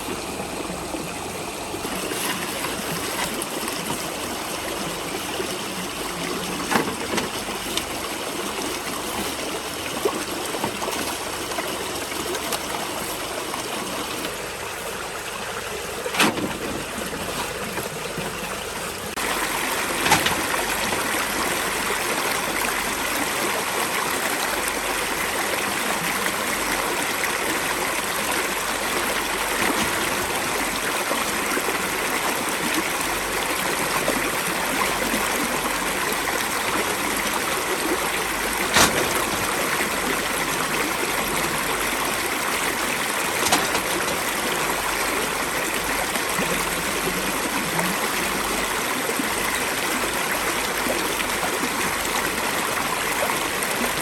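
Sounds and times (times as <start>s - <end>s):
flowing water rushing: 0.0s - 54.0s
sharp knocks: 38.7s - 40.0s.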